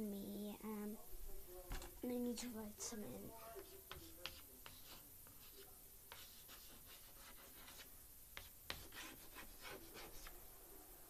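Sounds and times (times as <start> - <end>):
scratchy handwriting strokes: 2.8 - 10.4.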